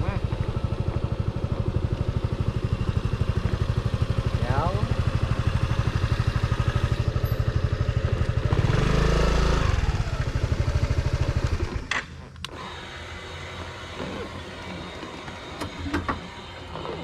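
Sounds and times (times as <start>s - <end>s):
motorcycle engine idling: 0.0s - 12.4s.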